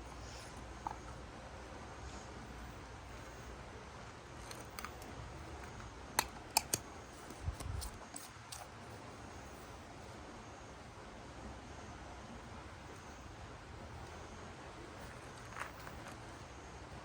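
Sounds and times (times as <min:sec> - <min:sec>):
sharp handling clicks: 0:04.4 - 0:08.7.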